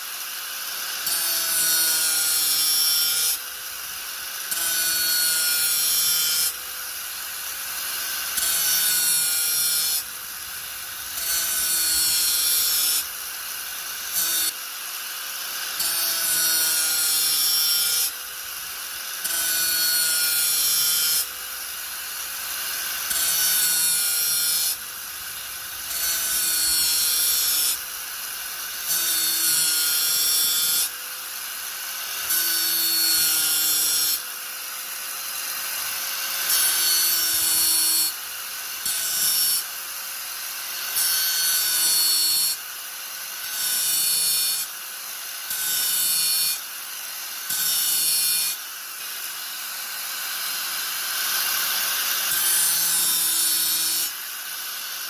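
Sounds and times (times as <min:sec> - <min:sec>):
angle grinder grinding: 0:00.2 - 0:42.7.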